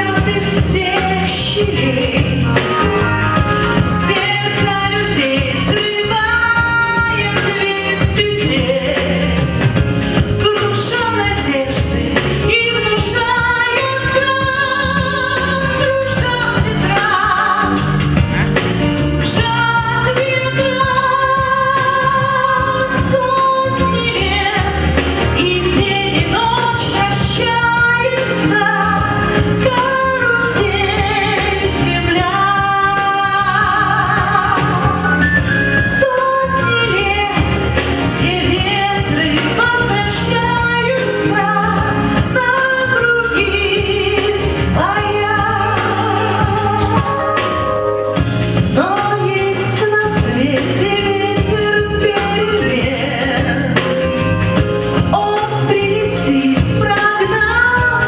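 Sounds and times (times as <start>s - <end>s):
band accompaniment: 0.0s - 58.0s
person singing: 36.0s - 54.4s.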